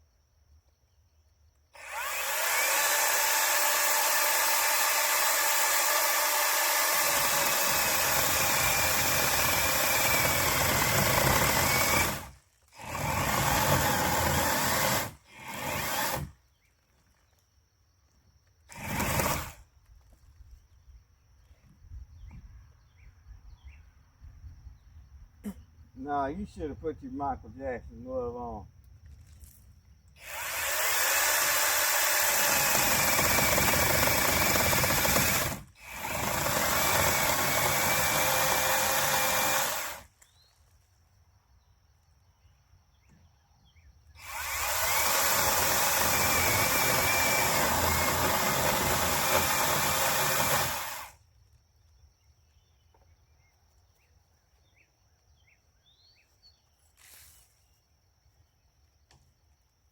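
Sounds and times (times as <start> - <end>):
angle grinder grinding wood: 1.8 - 16.3, 30.2 - 40.0, 44.2 - 51.1.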